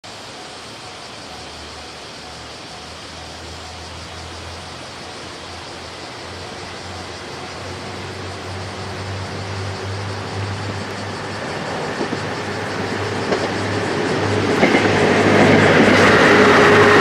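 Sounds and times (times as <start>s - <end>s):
train rushing noise: 0.0s - 17.0s
low diesel engine hum: 0.1s - 17.0s.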